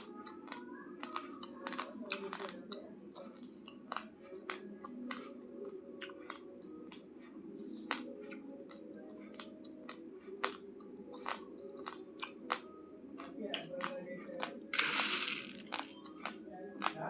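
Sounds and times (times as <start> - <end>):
crunching of chewed rice: 6.0 - 6.5, 7.9 - 13.4.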